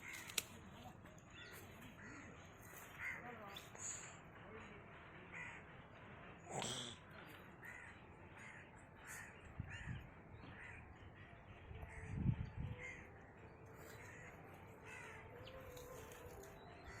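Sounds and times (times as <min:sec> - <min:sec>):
crows cawing: 0:00.0 - 0:00.5, 0:02.0 - 0:03.3, 0:05.3 - 0:05.6, 0:07.6 - 0:11.3, 0:11.9 - 0:13.1, 0:13.8 - 0:17.0.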